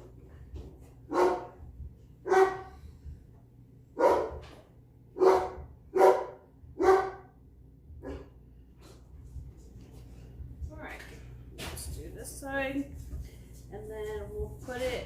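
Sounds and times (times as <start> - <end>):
dog barking: 1.1 - 1.6, 2.2 - 2.7, 4.0 - 4.4, 5.2 - 7.3, 8.0 - 8.3.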